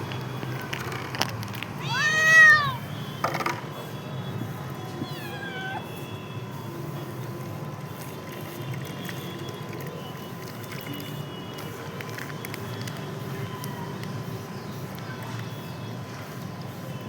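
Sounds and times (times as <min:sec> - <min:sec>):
cat meowing: 0:01.8 - 0:02.9, 0:05.0 - 0:06.0.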